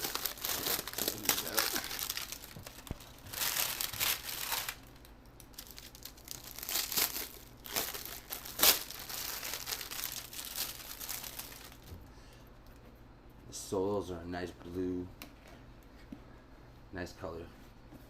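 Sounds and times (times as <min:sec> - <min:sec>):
packaging crinkling and rustling: 0:00.0 - 0:12.0.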